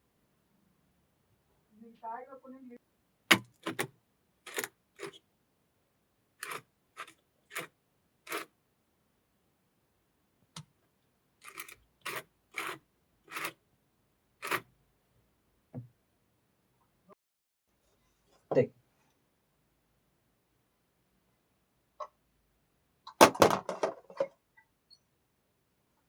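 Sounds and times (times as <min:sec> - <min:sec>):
sharp scraping strokes: 0:04.5 - 0:05.2, 0:06.4 - 0:07.7, 0:08.3 - 0:08.5, 0:11.4 - 0:13.6, 0:14.4 - 0:14.6.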